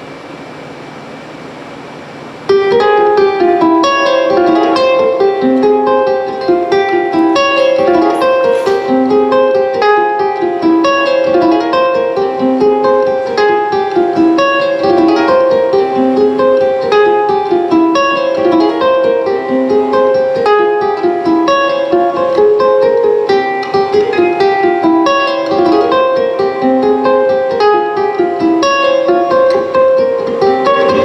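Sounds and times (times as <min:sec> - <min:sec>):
plucked string instrument: 0:02.5 - 0:31.0.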